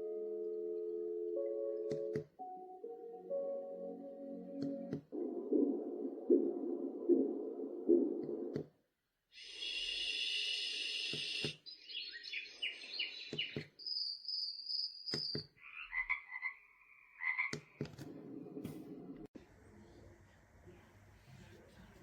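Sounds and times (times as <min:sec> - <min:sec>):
repeated chirps: 0:09.4 - 0:15.5
frogs croaking: 0:13.9 - 0:17.8.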